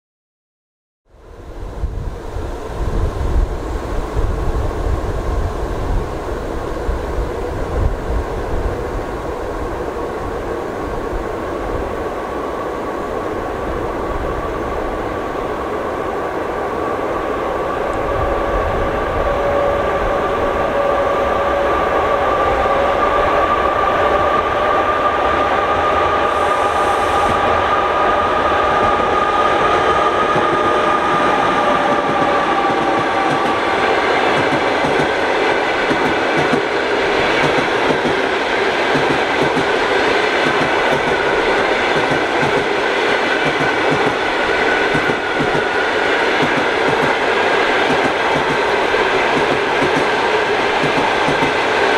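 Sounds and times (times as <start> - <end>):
electric locomotive whine: 1.1 - 51.9
train wheels clickety-clack: 28.7 - 51.9.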